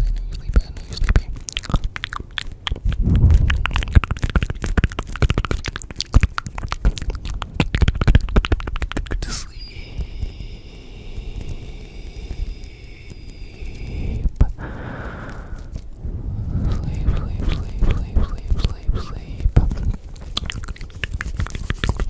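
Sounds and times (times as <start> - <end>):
crackling and crunching clicks: 0.0 - 22.0
low rumble: 2.7 - 20.4
high-pitched multi-tone hum: 9.2 - 19.9.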